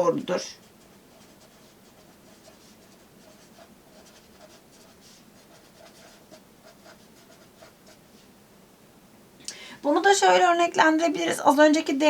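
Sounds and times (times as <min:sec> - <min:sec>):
pen scratching on paper: 0:00.6 - 0:08.1.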